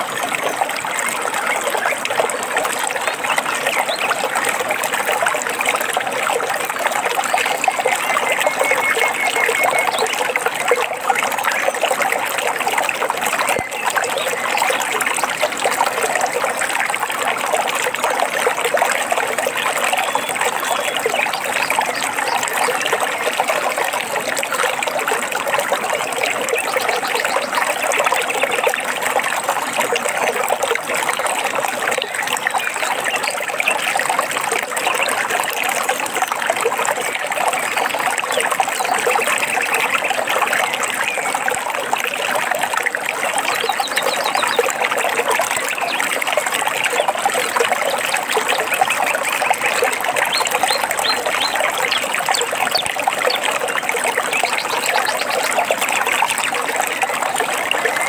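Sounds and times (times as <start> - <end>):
stream babbling over stones: 0.0 - 58.0
faint bird chirps: 8.0 - 10.2.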